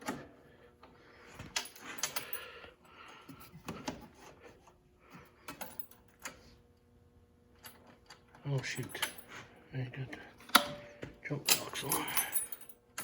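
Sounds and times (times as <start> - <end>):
faint steady hum: 0.0 - 13.0
metallic clinks: 11.4 - 13.0.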